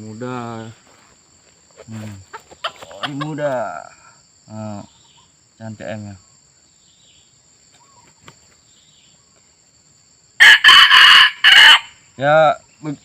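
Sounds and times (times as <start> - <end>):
rooster crowing: 10.4 - 12.0.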